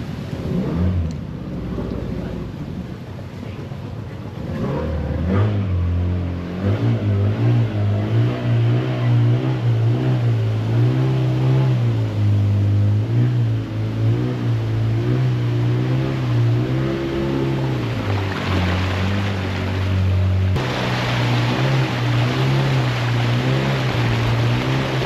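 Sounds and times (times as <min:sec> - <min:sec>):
engine running under load: 0:04.5 - 0:25.0.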